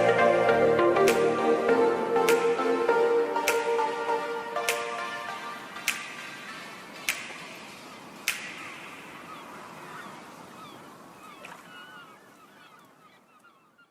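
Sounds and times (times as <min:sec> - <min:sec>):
music: 0:00.0 - 0:07.4.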